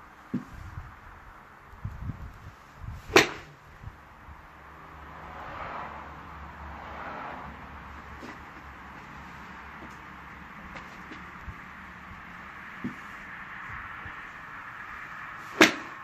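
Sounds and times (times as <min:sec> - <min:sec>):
golf club striking ball: 0:03.1 - 0:03.6, 0:15.5 - 0:16.0.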